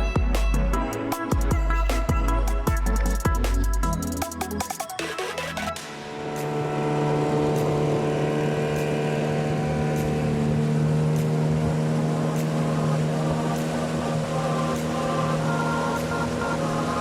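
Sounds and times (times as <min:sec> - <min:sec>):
boat motor running: 0:05.0 - 0:17.0.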